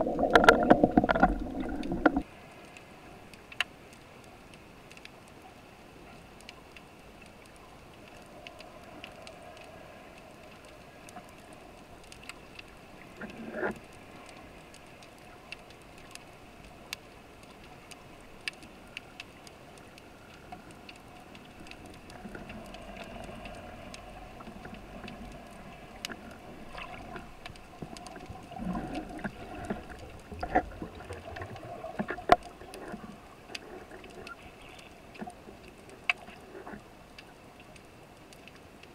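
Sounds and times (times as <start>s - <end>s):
underwater hum and hiss: 0.0s - 38.9s.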